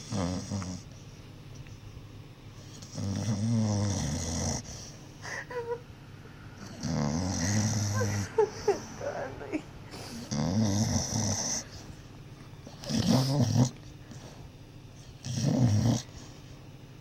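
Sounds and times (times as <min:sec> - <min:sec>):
dog snoring: 0:00.0 - 0:01.0, 0:02.6 - 0:05.0, 0:06.6 - 0:08.3, 0:09.9 - 0:12.0, 0:12.6 - 0:16.5.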